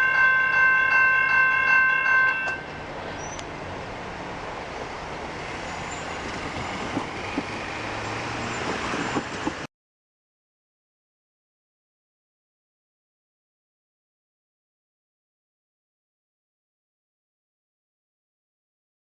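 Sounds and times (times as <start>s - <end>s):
train rolling on rails: 0.0s - 9.7s.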